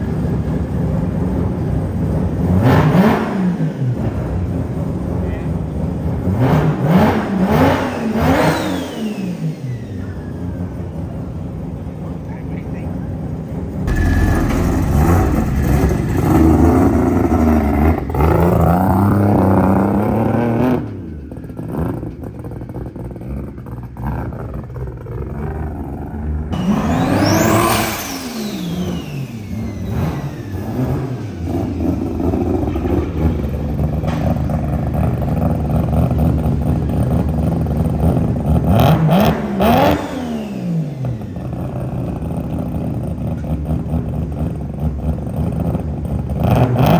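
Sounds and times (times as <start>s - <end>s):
rotary engine revving: 13.9s - 20.9s, 25.6s - 34.0s, 37.9s - 42.5s.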